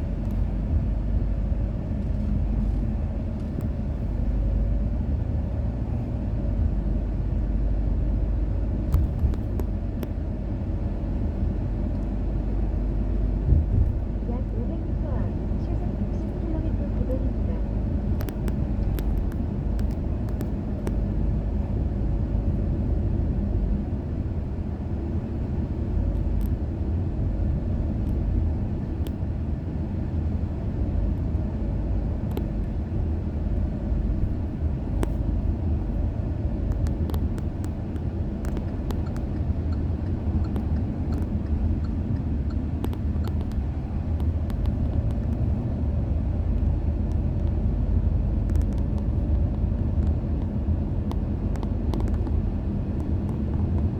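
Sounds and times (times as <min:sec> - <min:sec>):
air conditioning running: 0:00.0 - 0:53.9
car interior rumble: 0:00.0 - 0:53.9
faint ticks: 0:36.7 - 0:45.5.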